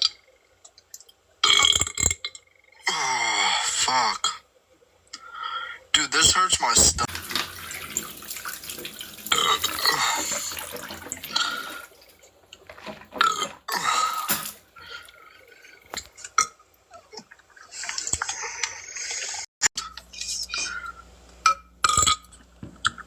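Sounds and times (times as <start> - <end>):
person burping: 1.4 - 4.5, 9.3 - 10.6, 11.3 - 11.8, 12.8 - 17.4, 21.8 - 23.0.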